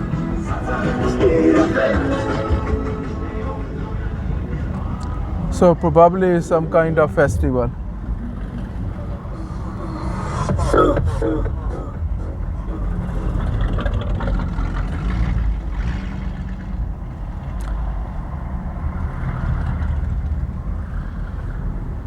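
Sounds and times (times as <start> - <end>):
car engine and tyres rumbling: 0.0 - 22.0.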